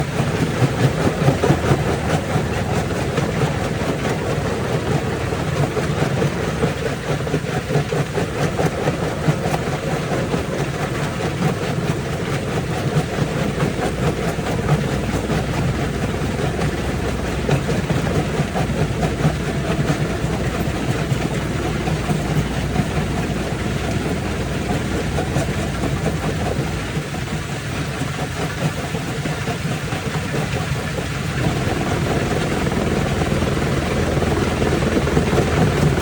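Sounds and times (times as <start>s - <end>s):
rock crusher rumbling: 0.0s - 27.3s.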